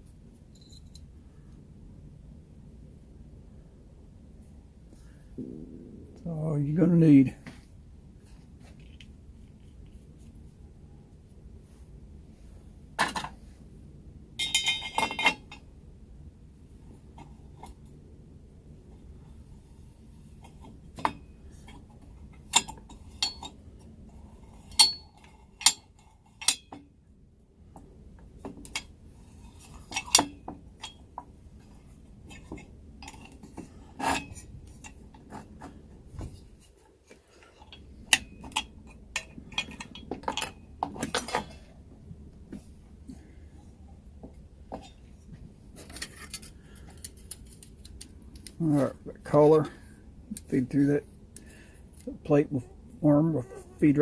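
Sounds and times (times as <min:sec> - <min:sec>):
low steady hum: 0:00.0 - 0:54.0
small metal parts clinking: 0:00.5 - 0:01.1, 0:14.4 - 0:15.6.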